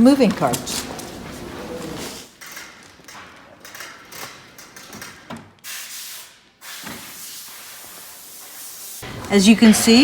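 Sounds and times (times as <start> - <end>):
chair scuffing on carts: 0.0 - 3.5.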